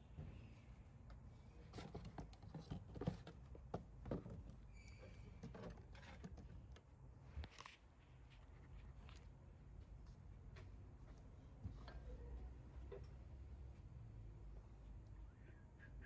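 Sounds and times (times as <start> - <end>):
faint clicks and light knocks: 10.0 - 13.9.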